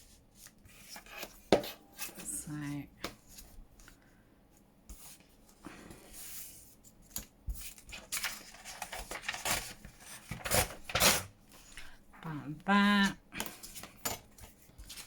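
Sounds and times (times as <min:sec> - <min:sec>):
paper rustling: 0:07.1 - 0:12.0, 0:13.5 - 0:15.0.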